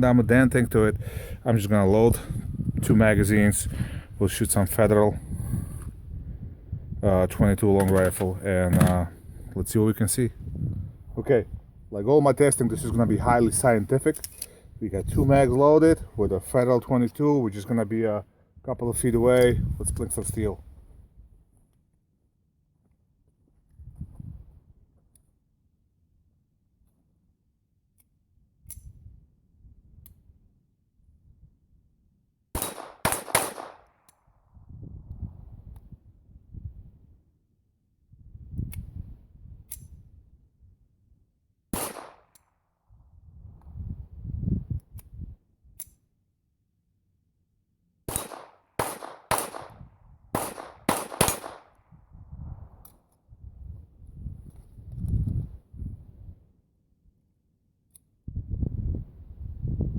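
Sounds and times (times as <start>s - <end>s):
pistol shots: 32.6s - 34.1s, 41.7s - 42.4s, 48.1s - 51.8s.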